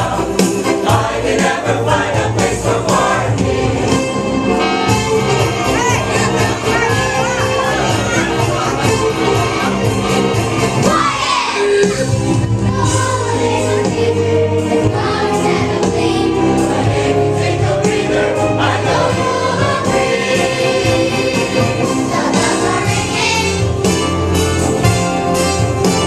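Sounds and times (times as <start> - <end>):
choir singing: 0.0 - 12.0, 12.6 - 24.0
musical accompaniment: 0.0 - 26.0.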